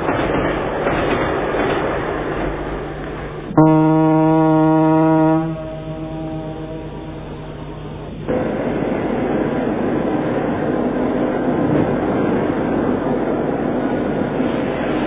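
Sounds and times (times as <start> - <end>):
train running: 0.0 - 15.0
low train horn: 3.5 - 8.5.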